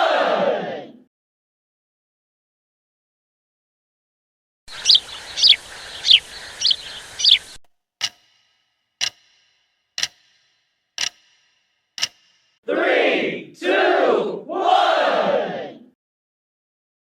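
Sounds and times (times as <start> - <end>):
crowd shouting: 0.0 - 1.0, 12.7 - 15.9
background hiss: 4.7 - 7.6
short sharp high bird calls: 4.7 - 7.6
clock-like timer ticks: 8.0 - 12.6.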